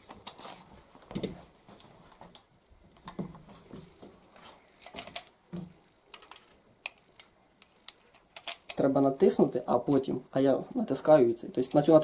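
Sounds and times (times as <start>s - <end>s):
rifle and magazines handled clicking: 4.8s - 5.4s, 6.1s - 8.8s.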